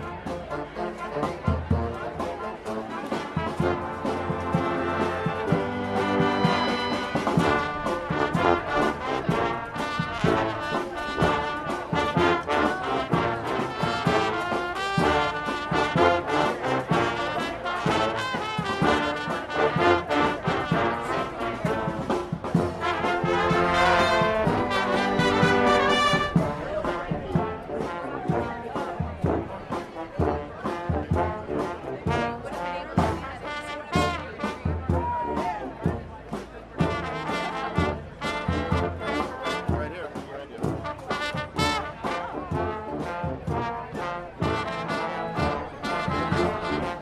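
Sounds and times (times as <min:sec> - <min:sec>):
brass marching band playing: 0:00.0 - 0:47.0.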